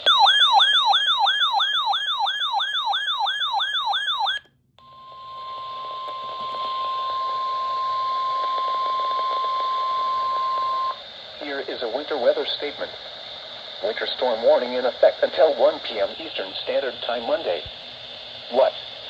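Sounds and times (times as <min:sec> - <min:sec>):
fast warbling siren: 0:00.0 - 0:11.0
steady single-pitch alarm tone: 0:00.0 - 0:11.1
radio hiss: 0:00.1 - 0:01.2, 0:05.3 - 0:19.0.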